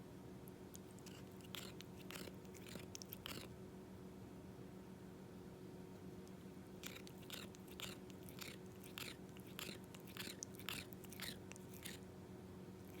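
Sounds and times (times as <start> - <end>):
cat grinding teeth: 0.7 - 3.5, 6.8 - 12.1, 12.8 - 13.0.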